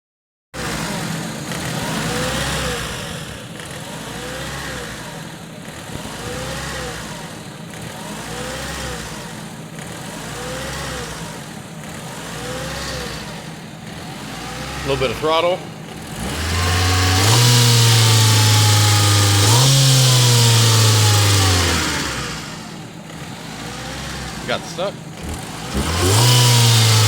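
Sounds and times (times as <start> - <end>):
car engine idling: 0.6 - 27.0.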